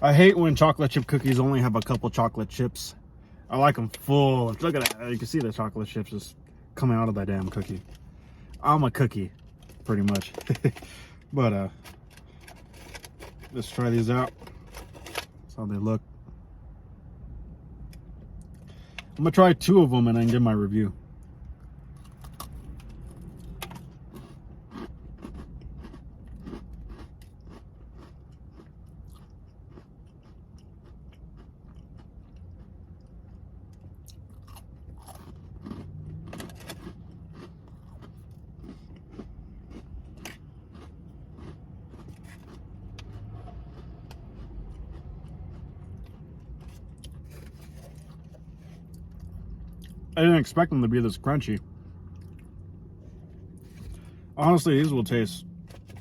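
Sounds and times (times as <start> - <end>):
low steady background rumble: 0.0 - 56.0
cookie crunching and chewing: 7.1 - 15.3, 21.5 - 56.0.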